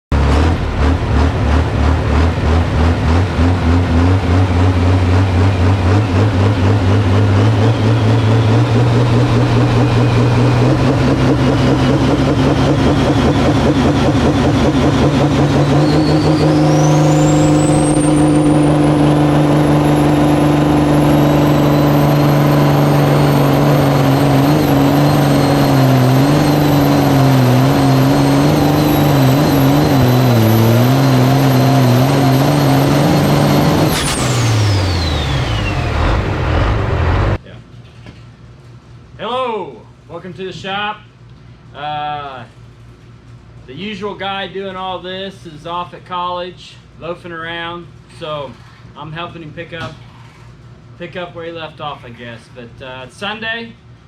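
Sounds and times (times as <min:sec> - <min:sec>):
tractor engine running hard: 0:00.0 - 0:37.4
high whine: 0:05.5 - 0:37.4.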